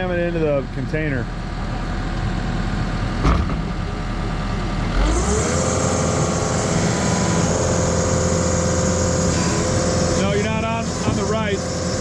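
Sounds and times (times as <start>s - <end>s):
loader engine revving: 4.8s - 12.0s.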